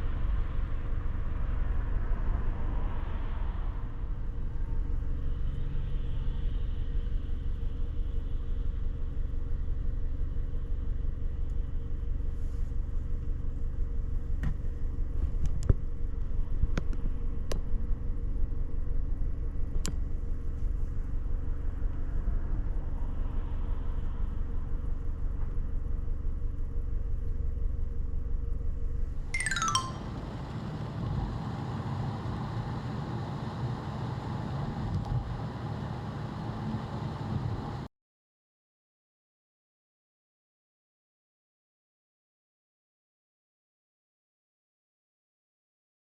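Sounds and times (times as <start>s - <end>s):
vehicle running: 29.4s - 37.9s
road traffic rumble: 29.8s - 37.9s.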